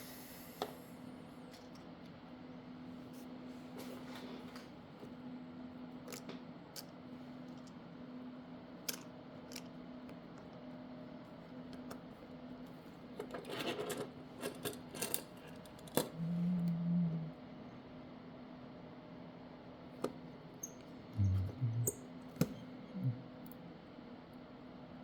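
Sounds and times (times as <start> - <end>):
low hum: 21.2 - 23.3.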